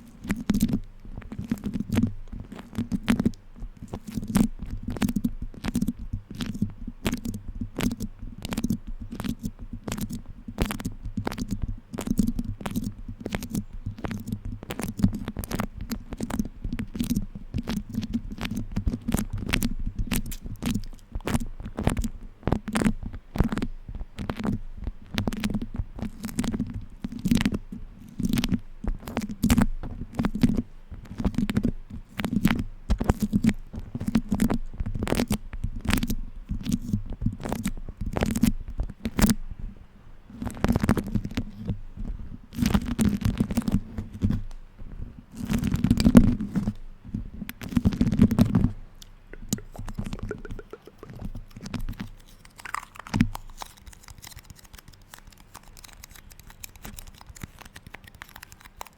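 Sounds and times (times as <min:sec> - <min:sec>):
muffled handling rumble: 0:41.2 - 0:52.2
waxed cloth crackling: 0:45.3 - 0:58.9.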